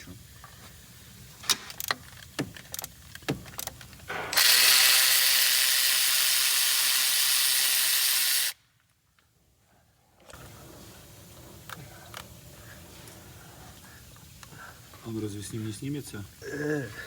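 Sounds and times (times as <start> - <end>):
handheld power tool spinning: 4.3 - 8.6.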